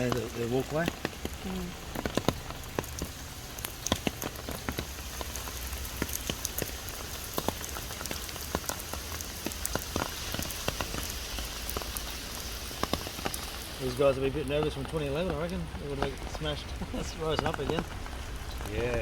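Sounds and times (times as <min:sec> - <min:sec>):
rain pattering: 0:00.0 - 0:19.0
sharp raindrop taps: 0:00.0 - 0:19.0.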